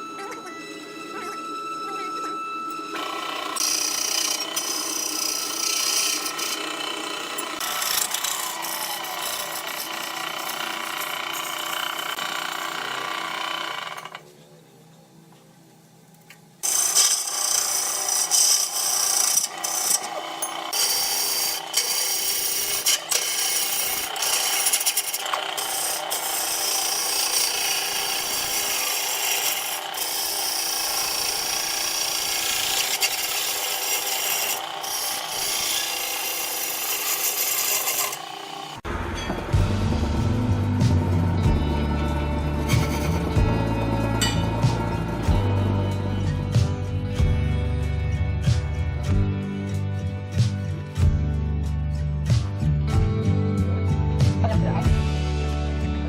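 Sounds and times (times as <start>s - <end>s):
wood lathe humming: 0.0s - 14.2s, 16.6s - 46.5s
tool scraping turning wood: 2.1s - 14.2s, 16.6s - 38.9s, 42.6s - 45.5s.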